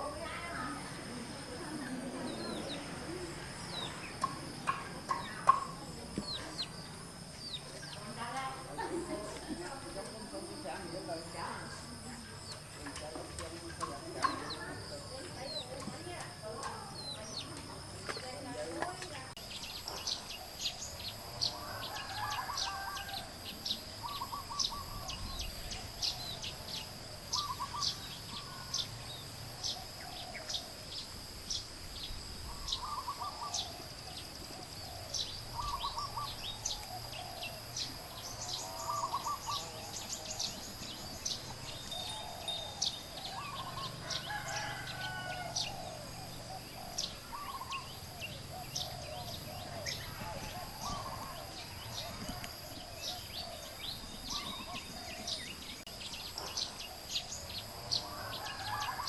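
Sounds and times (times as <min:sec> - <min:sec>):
chickens calling: 0:00.0 - 0:10.2, 0:13.4 - 0:17.9, 0:32.4 - 0:59.0
high chirps of chicks: 0:32.1 - 0:59.0.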